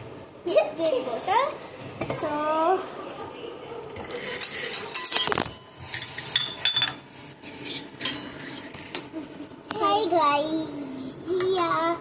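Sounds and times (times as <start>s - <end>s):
kitchen utensils clattering: 3.8s - 7.2s.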